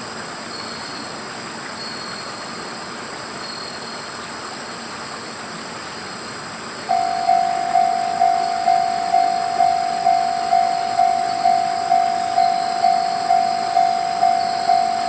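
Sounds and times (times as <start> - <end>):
level crossing alarm clanging: 6.9 - 15.0.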